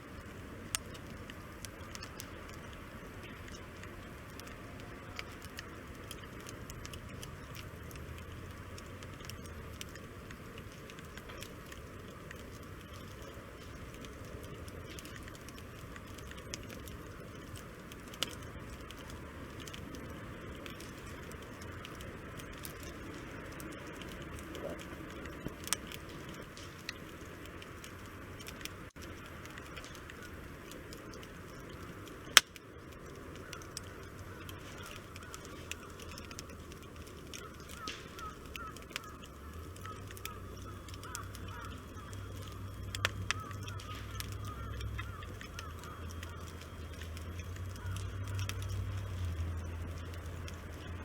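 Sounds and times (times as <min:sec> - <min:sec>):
wood fire crackling and popping: 0:00.0 - 0:51.0.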